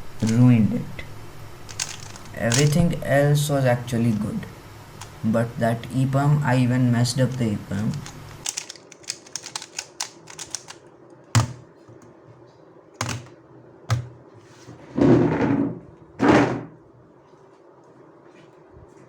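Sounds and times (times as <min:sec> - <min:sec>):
puzzle cube clicking: 0:01.7 - 0:02.8, 0:07.3 - 0:10.8.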